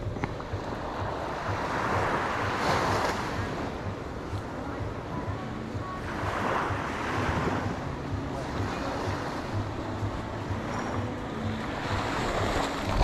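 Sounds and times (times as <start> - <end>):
surf breaking on beach: 0.0 - 5.4.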